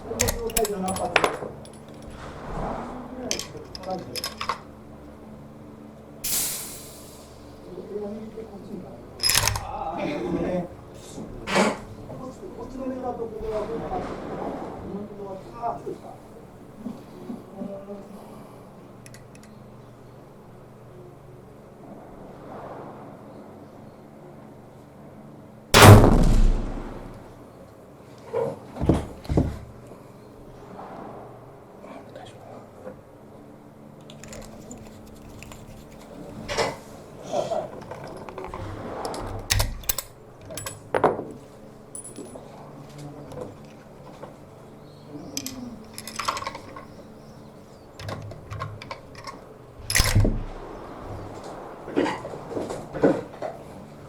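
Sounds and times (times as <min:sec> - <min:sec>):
loud deep thump: 0:25.8 - 0:27.3
rifle shot: 0:25.8 - 0:27.3
rifle gear clicks and clacks: 0:34.0 - 0:36.7.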